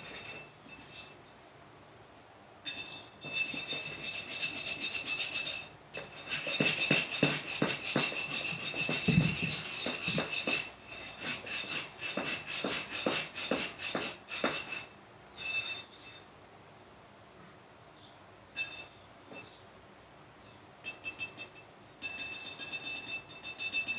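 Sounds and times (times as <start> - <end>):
metal being scraped by hand: 0.0 - 1.2, 2.7 - 16.3.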